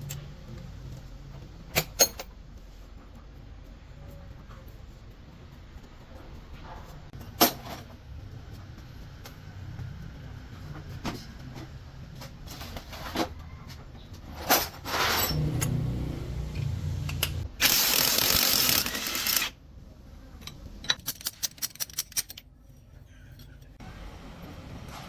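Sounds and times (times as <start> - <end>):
ratchet clicking: 16.6 - 19.6
metal tool clicks and clinks: 20.4 - 22.5.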